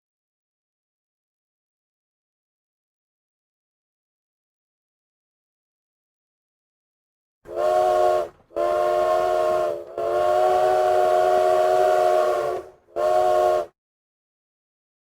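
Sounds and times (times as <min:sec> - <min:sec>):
train whistle blasts: 0:07.5 - 0:13.8.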